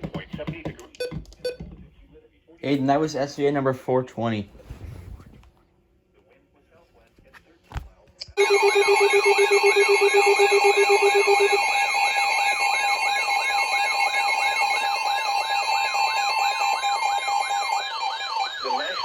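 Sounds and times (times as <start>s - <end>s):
siren-like whoop: 8.4s - 19.0s
steady high alarm tones: 8.4s - 19.0s
wavering high tone: 8.4s - 19.0s.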